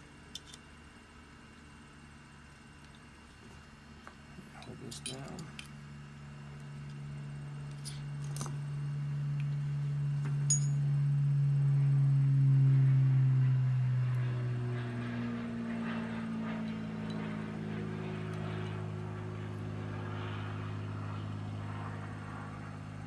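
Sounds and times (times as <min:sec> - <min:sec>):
engine drone: 0:04.4 - 0:23.0.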